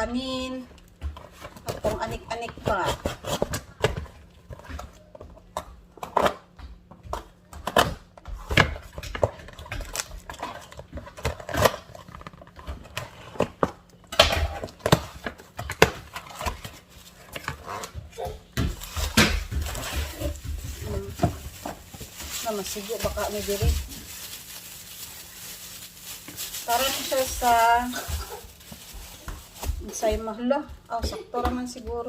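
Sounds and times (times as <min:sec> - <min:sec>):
box of baking supplies handled: 0:00.2 - 0:32.0
rustling and clatter: 0:14.6 - 0:32.0.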